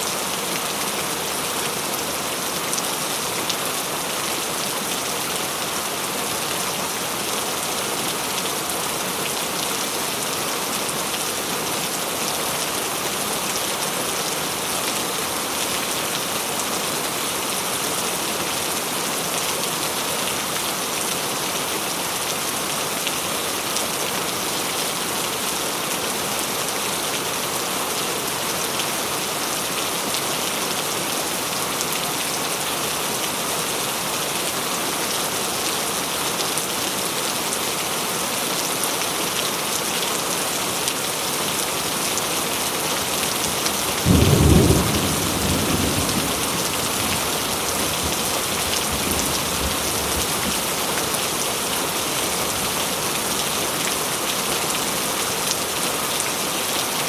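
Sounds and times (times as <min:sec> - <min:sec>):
steady rain hissing: 0:00.0 - 0:57.0
thunder clap rumbling: 0:44.0 - 0:49.8.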